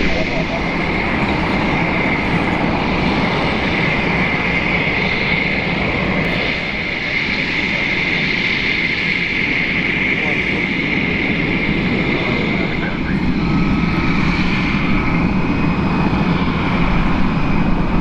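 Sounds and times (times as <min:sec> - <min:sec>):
constant rushing noise: 0:00.0 - 0:18.0
jet engine whine: 0:00.0 - 0:18.0.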